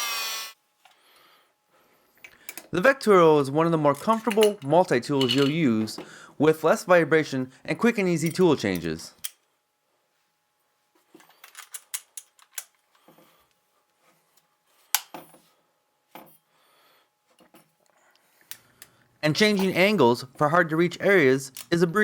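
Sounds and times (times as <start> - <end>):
metallic clicks and clinks: 11.2 - 12.8.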